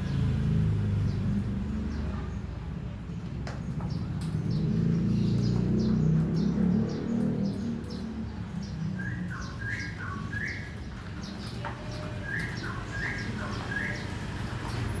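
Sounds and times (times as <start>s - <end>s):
lovebirds chirping: 4.6s - 15.0s.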